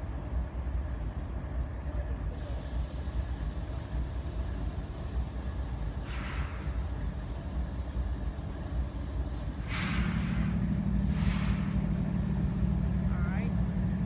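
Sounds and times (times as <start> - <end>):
diesel locomotive engine rumbling: 0.0 - 14.0
air hissing: 2.4 - 12.4.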